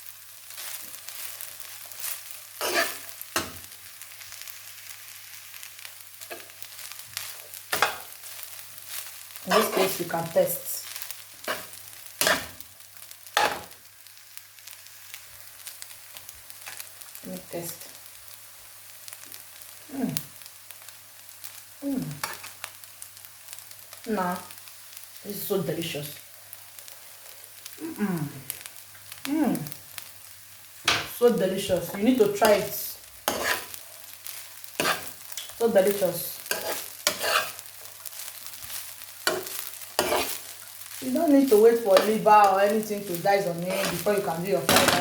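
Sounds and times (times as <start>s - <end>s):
rice sizzling in a pot: 0.0s - 45.0s
spoon scraping a pot: 2.6s - 3.1s, 33.3s - 33.8s, 34.8s - 35.1s, 36.5s - 37.6s, 39.3s - 40.4s
woman humming mm: 19.9s - 20.3s, 21.8s - 22.2s, 27.8s - 28.5s.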